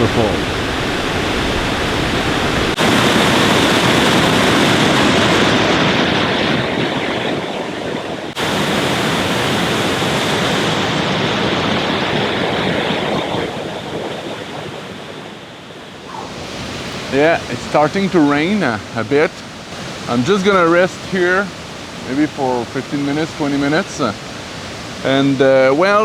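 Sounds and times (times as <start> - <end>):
waterfall rushing: 0.0 - 5.3, 8.3 - 11.5, 16.0 - 26.0.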